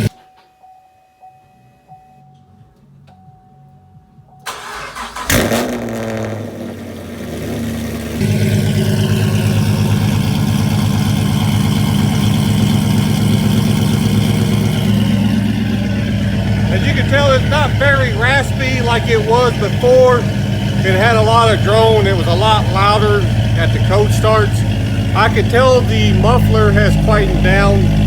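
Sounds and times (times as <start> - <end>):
car engine starting and idling: 4.4 - 28.0
starter cranking: 4.5 - 5.8, 9.3 - 28.0.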